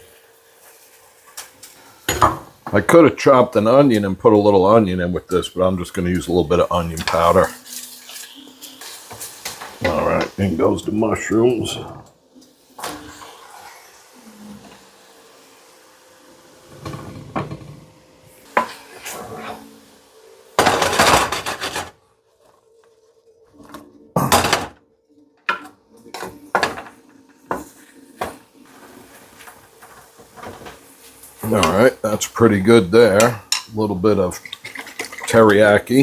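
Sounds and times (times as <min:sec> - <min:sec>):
utensil scraping a frying pan: 0:06.2 - 0:10.4, 0:12.8 - 0:14.9, 0:16.7 - 0:17.8, 0:18.4 - 0:19.9, 0:20.6 - 0:22.0, 0:33.1 - 0:36.0.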